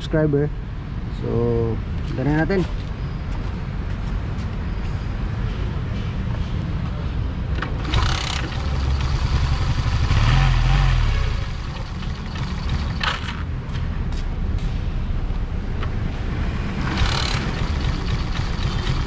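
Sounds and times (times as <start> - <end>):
motorcycle engine running: 7.8 - 13.5, 16.8 - 19.0.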